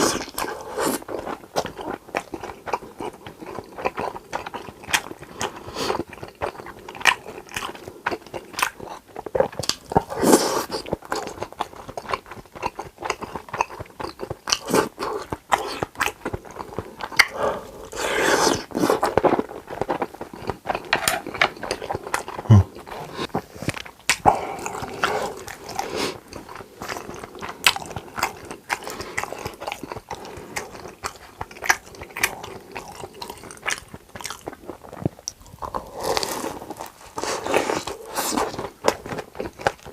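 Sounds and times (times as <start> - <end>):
crisp chewing crunches: 0.0 - 39.9
wet mouth noises: 0.0 - 39.9.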